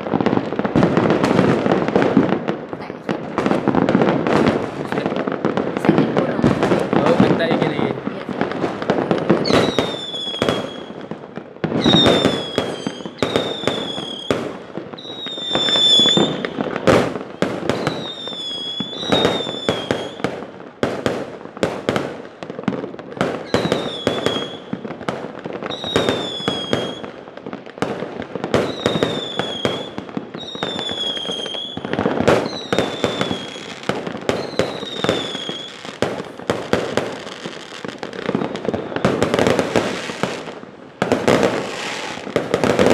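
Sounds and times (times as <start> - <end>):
fireworks bangs and crackling pops: 0.0 - 42.9
whistling rocket fireworks: 0.0 - 42.9.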